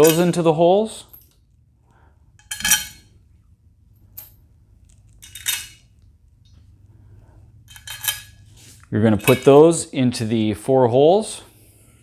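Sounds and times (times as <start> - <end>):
metal bolts clinking: 0.0 - 0.4, 2.4 - 3.1, 5.0 - 6.0, 7.7 - 9.8.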